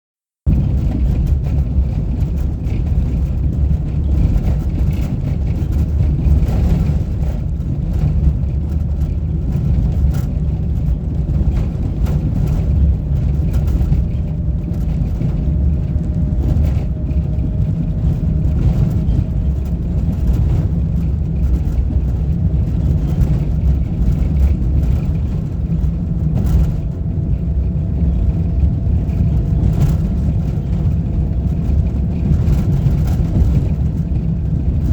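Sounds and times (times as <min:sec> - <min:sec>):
vehicle engine and road rumble: 0:00.5 - 0:34.9.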